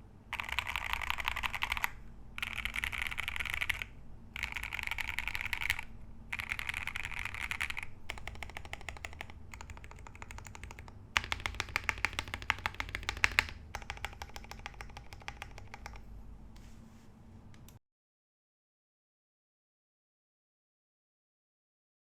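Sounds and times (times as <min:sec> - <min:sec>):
mechanical keyboard typing: 0:00.3 - 0:16.1.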